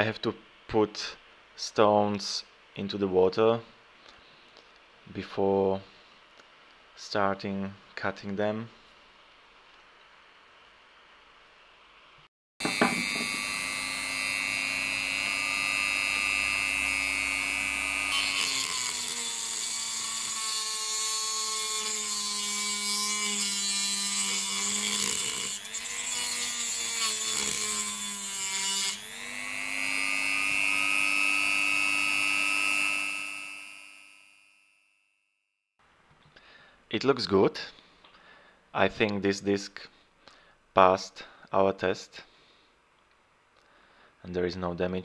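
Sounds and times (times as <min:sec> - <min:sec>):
cutting disc grinding stone: 0:12.6 - 0:34.5
rotary tool whining: 0:12.6 - 0:34.9.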